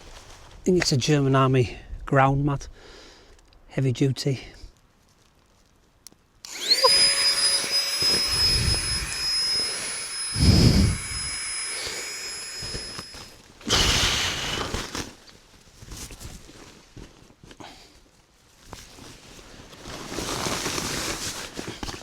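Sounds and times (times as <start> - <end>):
electric air pump whining: 6.5 - 13.9.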